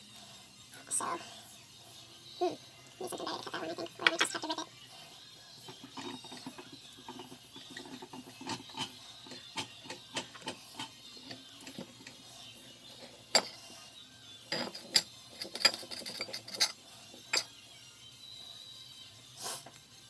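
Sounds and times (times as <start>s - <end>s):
utensils scraping and rubbing: 5.6s - 12.3s, 14.5s - 17.6s.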